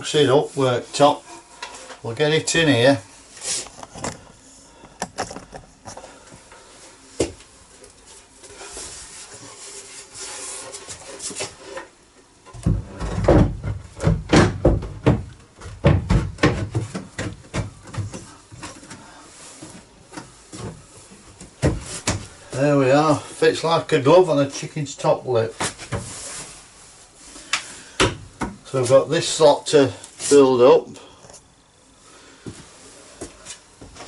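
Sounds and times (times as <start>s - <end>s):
heavy wooden knocks and thumps: 12.6s - 18.3s.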